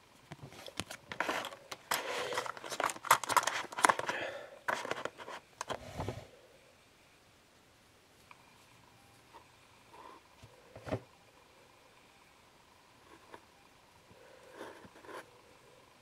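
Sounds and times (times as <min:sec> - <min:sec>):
packaging crinkling and tearing: 0:00.5 - 0:05.4
packaging sharp snaps: 0:00.6 - 0:05.8.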